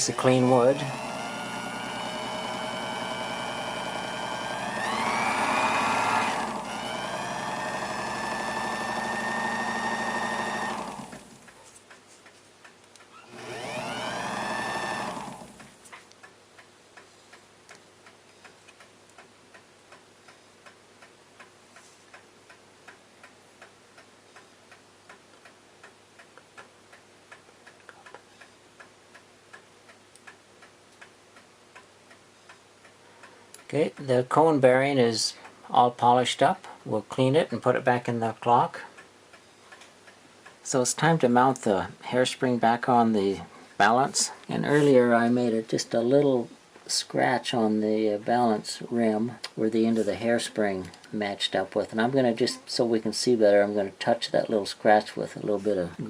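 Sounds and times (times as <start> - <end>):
small motor spinning: 0.0 - 11.5, 13.2 - 15.8
faint clock ticking: 0.0 - 13.5, 14.1 - 56.0.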